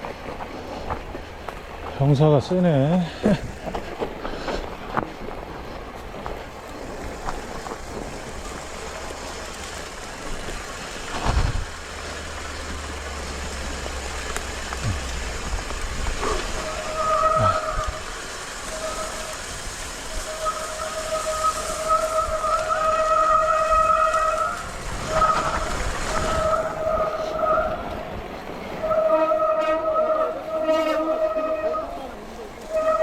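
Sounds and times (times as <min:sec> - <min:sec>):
bike riding and rattling: 0:00.0 - 0:33.0
whining tone: 0:16.2 - 0:18.0.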